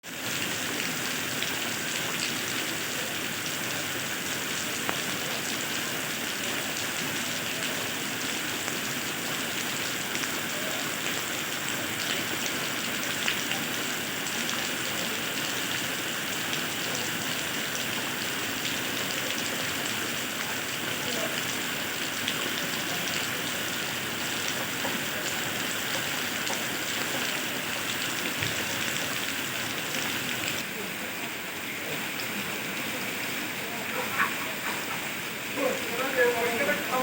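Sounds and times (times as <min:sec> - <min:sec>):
steady rain hissing: 0:00.0 - 0:37.0
raindrops ticking on surfaces: 0:00.1 - 0:37.0.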